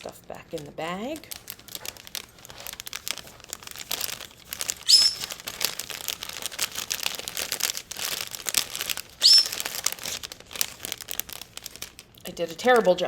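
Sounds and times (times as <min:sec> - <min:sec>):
plastic bag crinkling: 0:00.0 - 0:13.0
short high squeaks: 0:04.8 - 0:05.3, 0:09.2 - 0:09.6.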